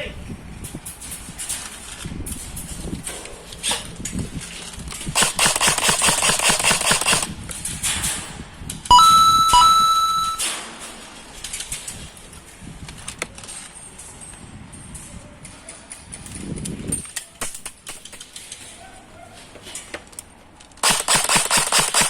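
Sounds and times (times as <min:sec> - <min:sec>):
airsoft gun automatic fire: 0:05.1 - 0:07.4, 0:20.8 - 0:22.0
loud metallic clang ringing: 0:08.9 - 0:10.8.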